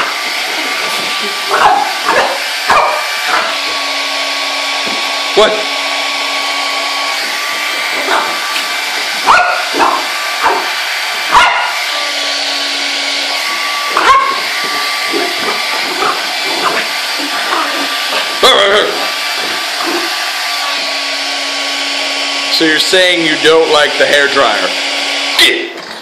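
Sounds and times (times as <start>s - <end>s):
dog barking and yipping: 0.0s - 3.8s, 7.6s - 11.9s, 13.6s - 20.3s
hair dryer running: 0.0s - 26.0s.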